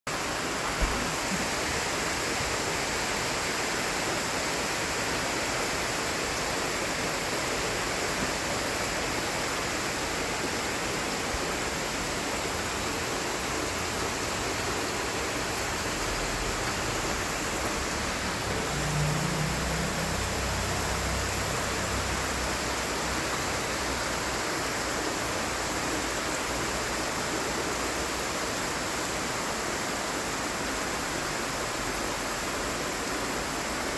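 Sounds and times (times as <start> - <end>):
steady rain falling: 0.1 - 33.9.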